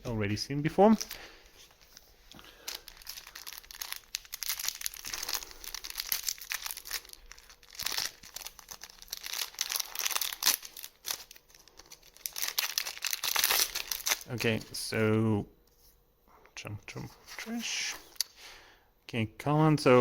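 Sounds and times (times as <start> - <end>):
foil wrapper crinkling and tearing: 0.9 - 14.8.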